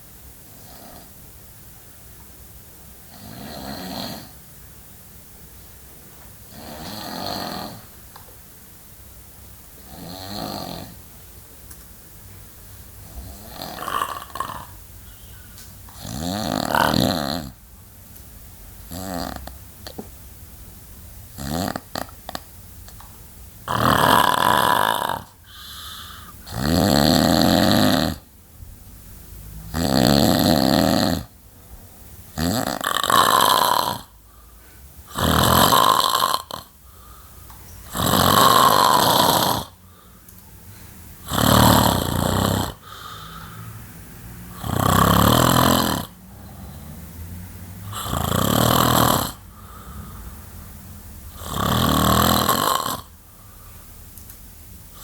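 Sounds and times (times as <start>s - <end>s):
man snoring: 3.0s - 4.4s, 6.5s - 7.9s, 9.8s - 11.0s, 13.0s - 14.8s, 16.0s - 17.6s, 18.9s - 19.6s, 21.3s - 22.4s, 23.6s - 28.3s, 29.6s - 31.4s, 32.3s - 34.3s, 35.0s - 40.1s, 41.2s - 43.8s, 44.5s - 47.0s, 47.8s - 50.2s, 51.3s - 53.2s.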